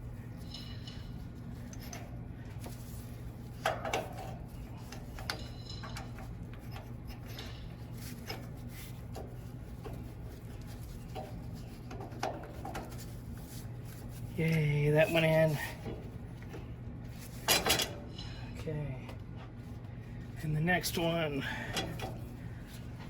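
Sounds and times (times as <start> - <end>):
steady low hum: 0.0 - 23.0
metal parts clicking and knocking: 3.6 - 8.4, 17.4 - 18.2.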